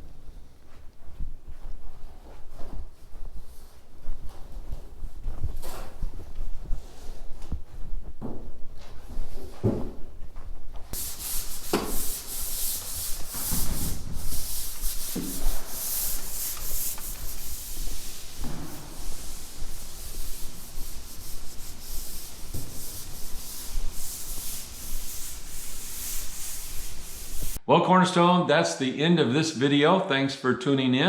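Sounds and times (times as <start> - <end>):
sanding rasping hiss: 11.0 - 27.6.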